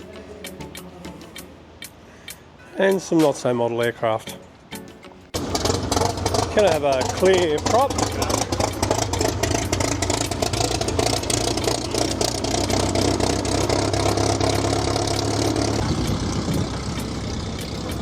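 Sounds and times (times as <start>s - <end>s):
aircraft piston engine idling: 5.4s - 18.0s.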